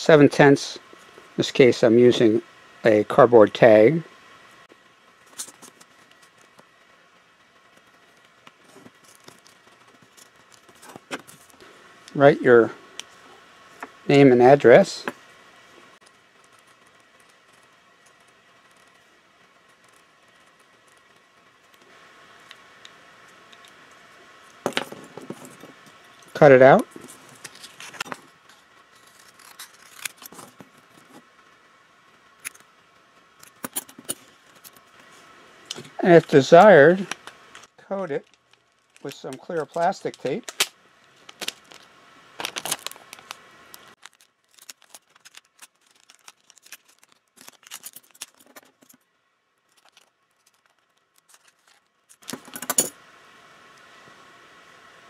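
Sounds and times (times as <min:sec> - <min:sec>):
room hiss: 0:00.0 - 0:55.0
cardboard tag rustling and clicking: 0:42.4 - 0:49.0.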